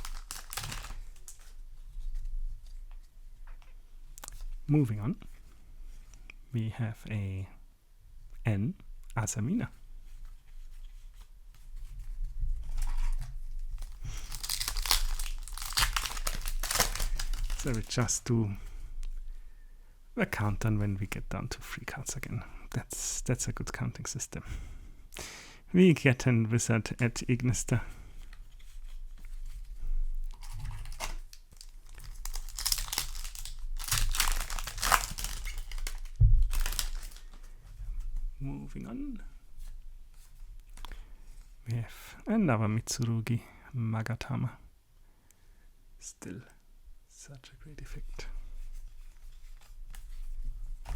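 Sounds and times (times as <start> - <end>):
foil wrapper crinkling: 0.0 - 1.6, 12.8 - 18.3, 30.2 - 37.6.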